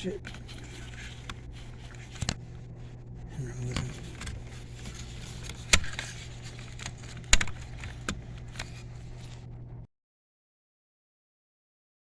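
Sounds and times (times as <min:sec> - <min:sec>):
steady low hum: 0:00.0 - 0:09.9.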